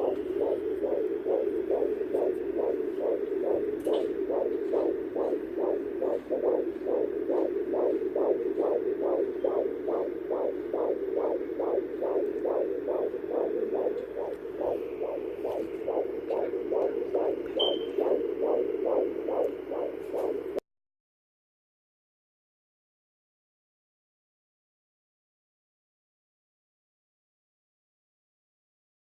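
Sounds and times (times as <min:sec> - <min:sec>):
fast heartbeat pulse from speaker: 0:00.0 - 0:20.6
steady hum: 0:00.0 - 0:20.6.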